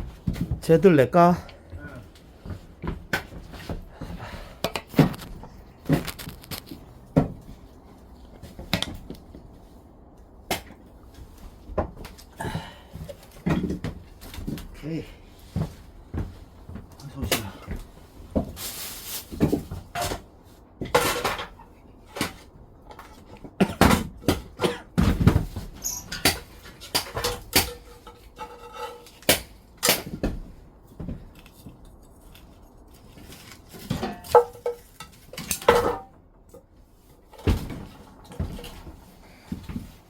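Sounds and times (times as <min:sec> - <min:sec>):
objects knocking and clattering: 0:02.4 - 0:07.6, 0:11.7 - 0:14.7, 0:19.3 - 0:31.5, 0:33.6 - 0:40.0.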